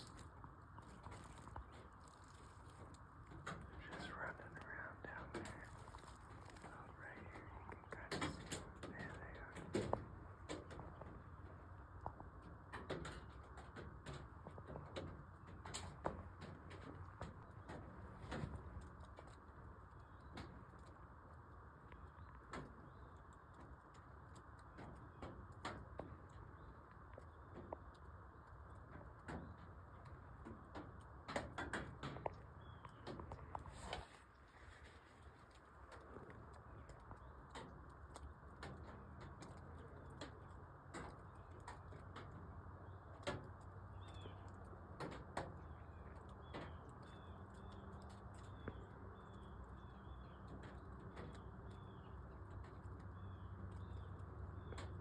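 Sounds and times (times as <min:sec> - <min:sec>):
faint sharp clicks: 0:00.0 - 0:11.2.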